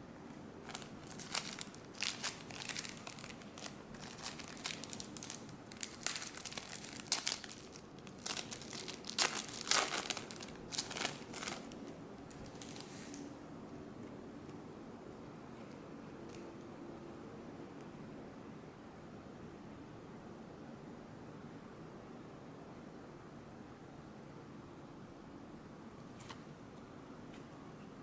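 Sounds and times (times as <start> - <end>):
plastic wrapper crinkling and tearing: 0.6 - 13.2.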